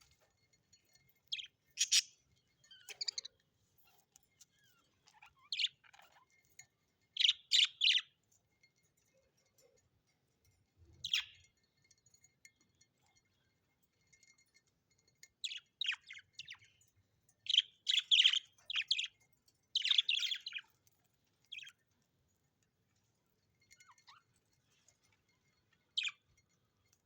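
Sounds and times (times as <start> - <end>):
bird chirping: 1.2 - 3.4, 4.6 - 6.2, 7.2 - 8.2, 10.9 - 11.5, 15.4 - 21.8, 23.6 - 26.4.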